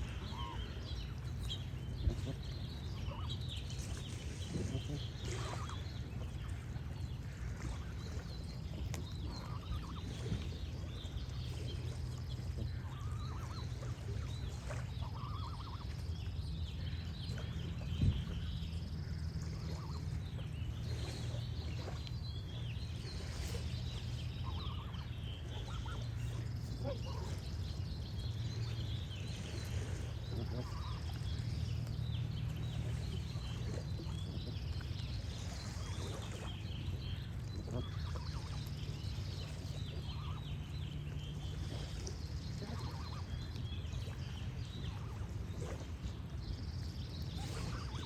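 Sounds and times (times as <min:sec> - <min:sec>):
steady low rumble: 0:00.0 - 0:48.0
birds chirping and trilling: 0:12.4 - 0:48.0.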